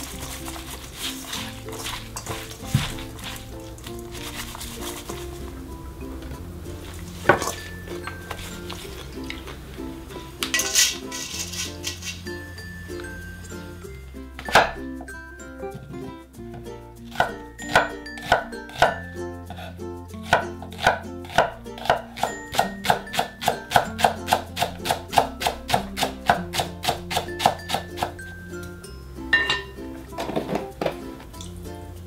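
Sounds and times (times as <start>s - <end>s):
light background music: 0.0s - 32.0s
knife chopping on cutting board: 1.8s - 3.4s, 14.5s - 14.8s, 17.2s - 19.0s, 20.2s - 28.2s.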